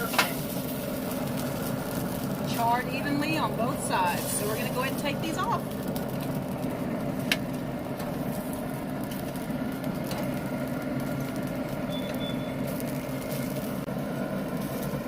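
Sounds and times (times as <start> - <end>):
faint crackling: 0.0 - 13.9
low mechanical hum: 0.0 - 15.0.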